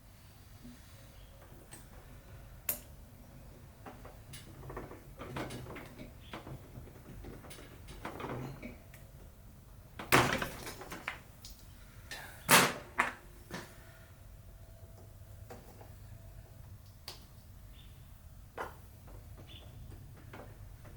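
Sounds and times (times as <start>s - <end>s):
knocks and clatter of tools: 3.8s - 9.4s, 10.0s - 11.2s, 18.6s - 20.9s.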